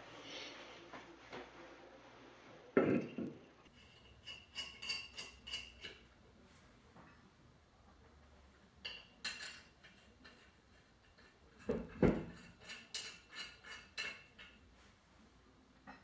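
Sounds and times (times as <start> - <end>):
lug nuts and tools clinking: 3.7 - 6.1.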